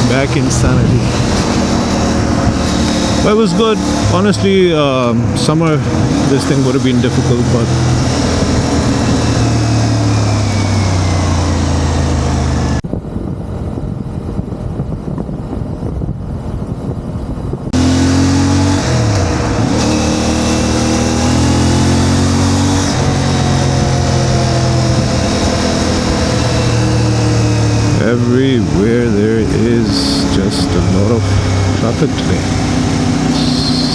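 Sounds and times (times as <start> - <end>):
motorcycle engine running: 0.0 - 33.9.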